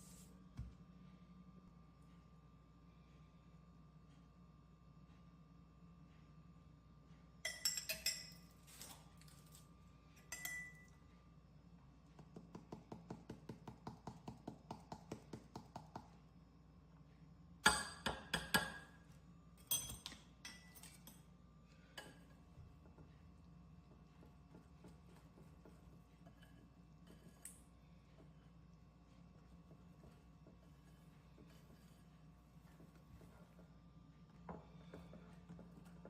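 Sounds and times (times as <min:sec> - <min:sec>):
stirring batter: 0:22.7 - 0:36.0.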